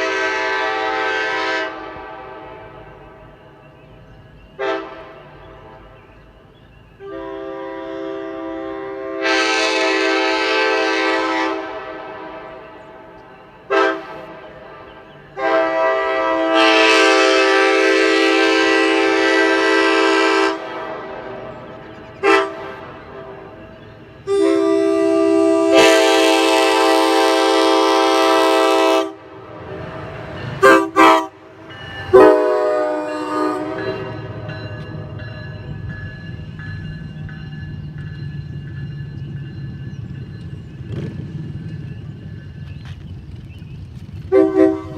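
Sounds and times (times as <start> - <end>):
air horn blasts: 0.0 - 2.9, 4.6 - 5.2, 7.0 - 12.6, 13.7 - 14.3, 15.4 - 21.2, 22.2 - 22.8, 24.2 - 29.4, 30.6 - 31.5, 32.1 - 34.2, 44.3 - 44.9.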